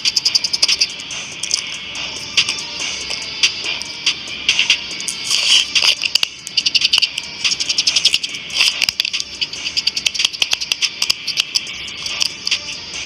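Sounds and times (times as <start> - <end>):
hand tools clicking: 5.1 - 12.8.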